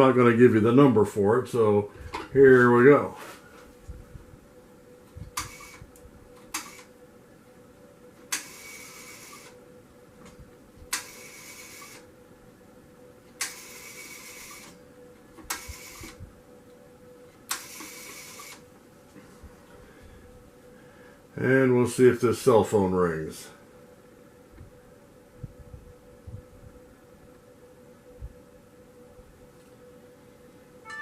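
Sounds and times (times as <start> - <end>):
rotary dial clicking and whirring: 5.3 - 5.8, 6.4 - 6.9, 8.2 - 9.6, 10.9 - 12.1, 13.3 - 14.8, 15.4 - 16.2, 17.4 - 18.7.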